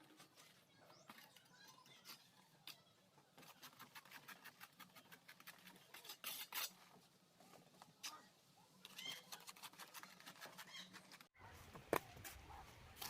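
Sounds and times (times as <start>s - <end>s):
trowel scraping mortar: 1.8s - 7.0s.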